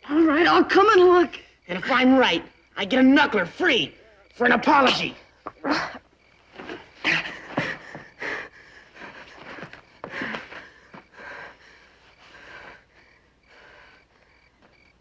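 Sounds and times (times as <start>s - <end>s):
heavy breathing: 6.6s - 14.6s.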